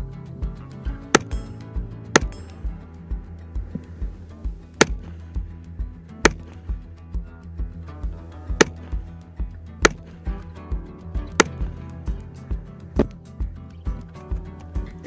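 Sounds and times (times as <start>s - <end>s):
music with low beat: 0.0s - 15.0s.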